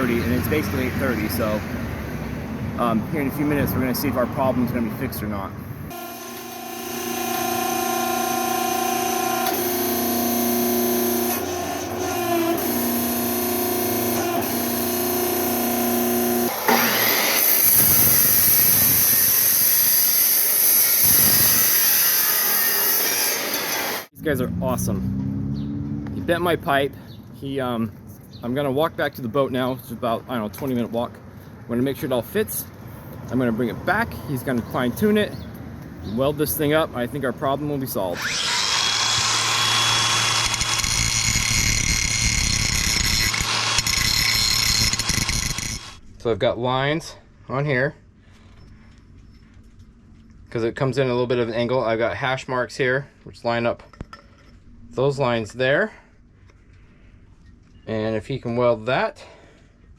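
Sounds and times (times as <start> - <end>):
power tool whining and humming: 5.9 - 24.2, 38.1 - 46.0.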